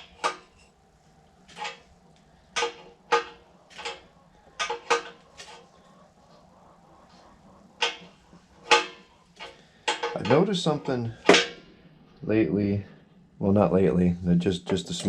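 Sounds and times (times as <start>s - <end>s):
faint steady hum: 0.0s - 15.0s
metal tools clinking on metal: 7.8s - 11.6s.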